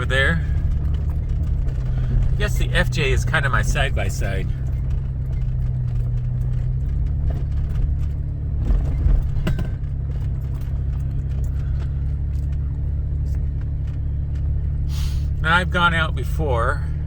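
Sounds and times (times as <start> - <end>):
car engine droning in cabin: 0.0 - 17.0
knocks and rattles: 4.5 - 14.6.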